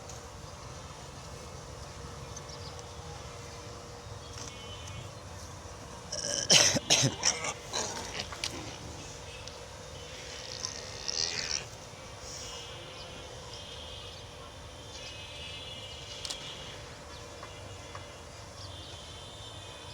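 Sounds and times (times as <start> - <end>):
high-pitched buzzing calls: 10.2 - 11.8.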